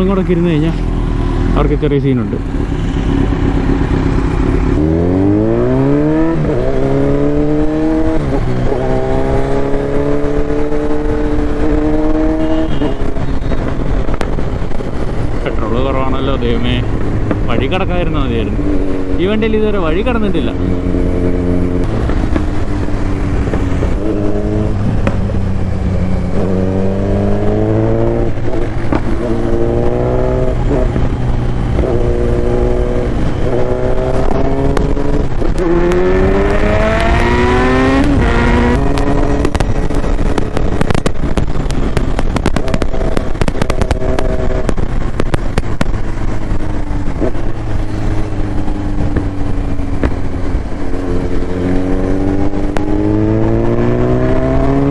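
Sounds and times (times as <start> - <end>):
motorcycle engine revving: 0.0 - 54.9
wind rumbling on microphone: 2.4 - 54.9.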